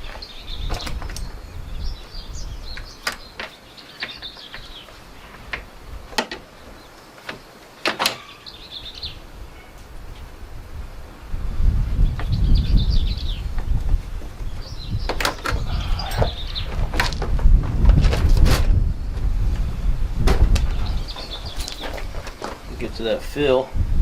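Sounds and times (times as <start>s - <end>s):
birds chirping: 0.0s - 17.4s, 18.8s - 23.7s
sharp clicks and knocks: 5.5s - 6.5s, 7.2s - 8.2s.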